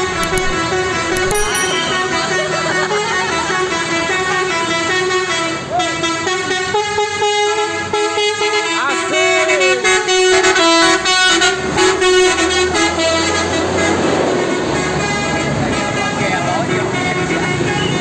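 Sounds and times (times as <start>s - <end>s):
bus air horn tune: 3.9s - 18.0s.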